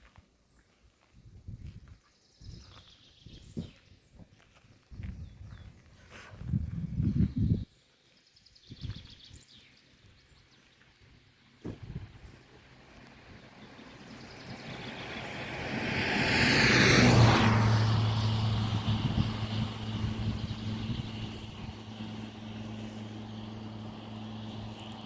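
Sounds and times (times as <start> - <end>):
low engine hum: 10.5 - 25.0
motor vehicle passing: 11.7 - 25.0.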